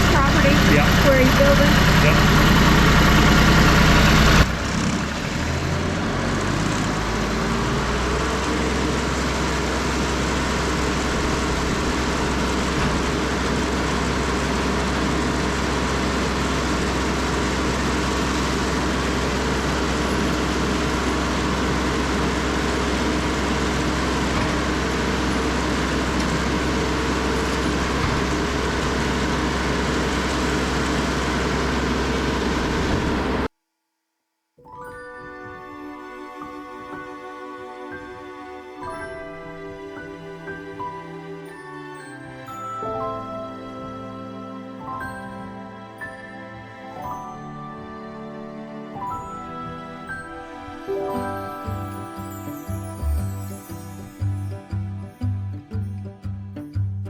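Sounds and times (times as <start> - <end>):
sawmill engine running: 0.0 - 33.5.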